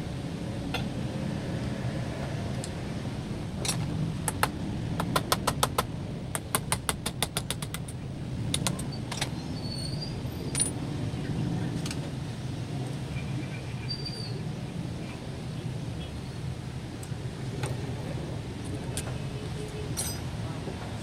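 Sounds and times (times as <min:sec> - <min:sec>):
steady low rumble: 0:00.0 - 0:08.7
sharp clicks: 0:04.2 - 0:08.9.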